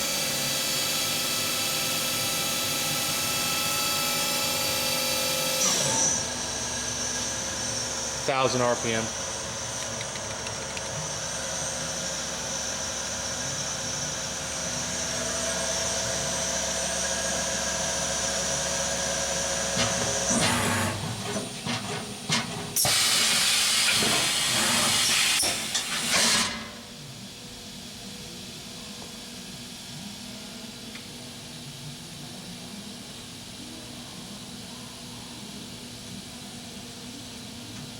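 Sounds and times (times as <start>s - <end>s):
machine spindle whining: 0.0s - 26.6s
air hissing blasts: 22.8s - 26.6s.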